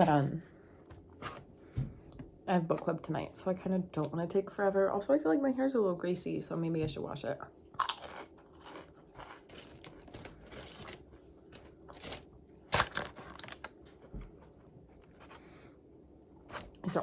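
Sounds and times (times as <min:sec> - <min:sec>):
crunchy food being chewed: 0:07.7 - 0:15.4.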